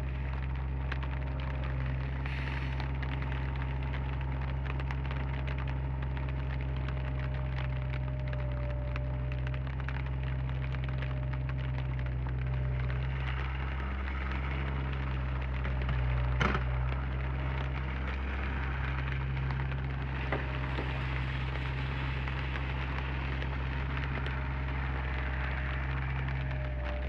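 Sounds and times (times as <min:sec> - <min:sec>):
crackling hiss: 0:00.0 - 0:27.0
excavator diesel engine running: 0:11.0 - 0:27.0.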